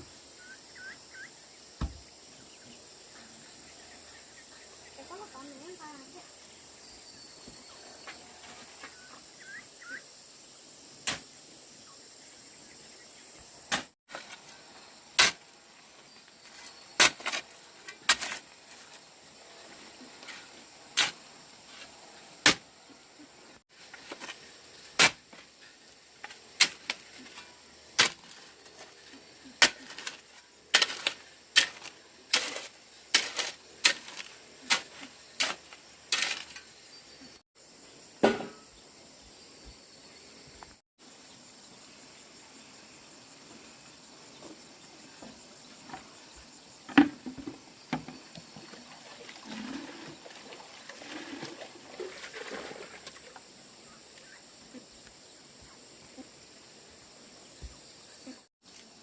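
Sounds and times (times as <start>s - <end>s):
sharp knocks: 38.2s - 38.7s.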